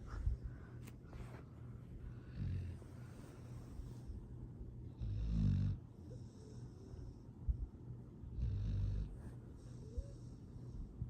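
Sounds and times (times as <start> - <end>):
dog snoring: 2.2 - 2.8, 5.0 - 7.2, 8.3 - 10.4.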